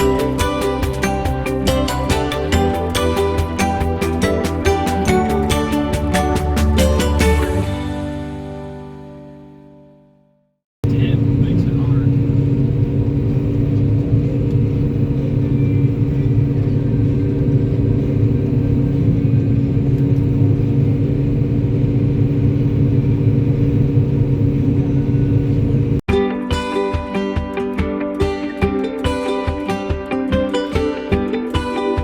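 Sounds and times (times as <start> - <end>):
large engine droning: 10.8 - 26.0.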